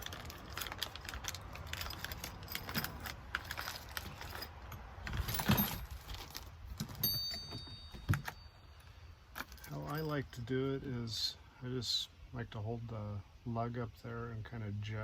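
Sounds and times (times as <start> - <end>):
small clicks and rattles: 0.0 - 8.4.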